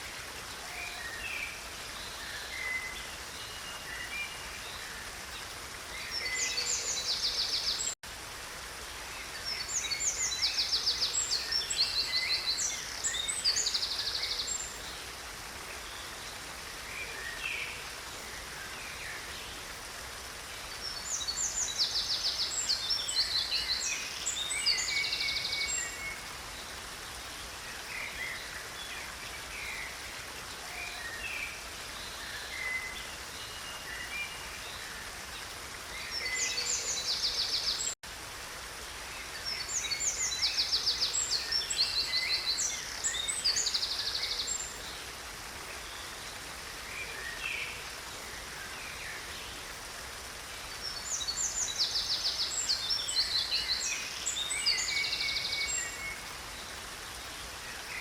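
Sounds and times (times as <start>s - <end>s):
creek water flowing: 0.0s - 58.0s
songbirds trilling and chirping: 0.0s - 58.0s.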